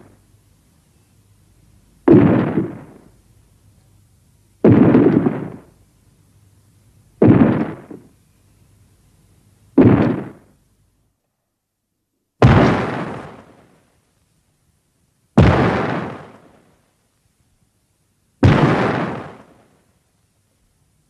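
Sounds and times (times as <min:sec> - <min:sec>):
explosion-like booms: 0:02.1 - 0:03.1, 0:04.6 - 0:05.7, 0:07.2 - 0:08.1, 0:09.8 - 0:10.5, 0:12.4 - 0:13.5, 0:15.4 - 0:16.4, 0:18.4 - 0:19.5.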